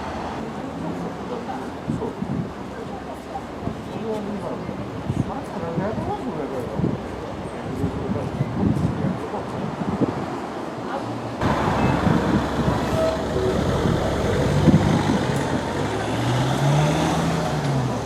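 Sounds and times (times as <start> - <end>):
street traffic noise: 0.0 - 18.0
vehicle engine running: 11.4 - 18.0.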